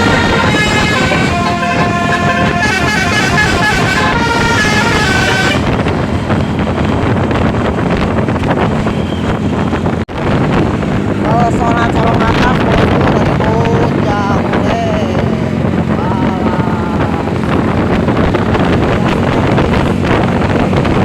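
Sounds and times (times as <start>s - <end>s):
musical air horn tune: 0.0s - 6.0s
vehicle noise: 0.0s - 21.0s.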